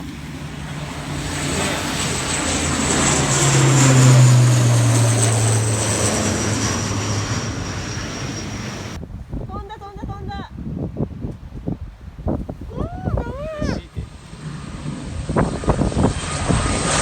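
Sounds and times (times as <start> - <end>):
propeller airliner passing: 0.0 - 9.3, 12.9 - 17.0.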